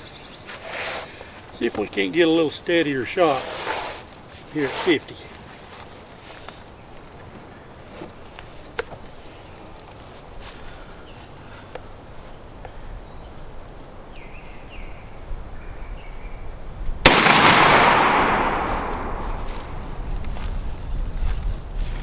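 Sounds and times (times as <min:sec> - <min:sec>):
shotgun shot echoing: 0:17.0 - 0:19.8.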